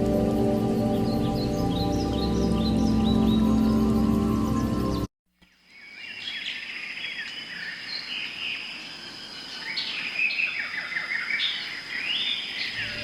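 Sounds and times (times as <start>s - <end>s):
birds chirping: 0.0s - 13.0s
faint high whine: 12.7s - 13.0s.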